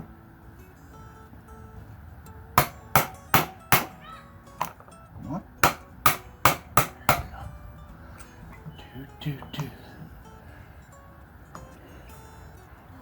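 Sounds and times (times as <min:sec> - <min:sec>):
hammer strikes: 0:02.6 - 0:04.0, 0:05.6 - 0:07.4.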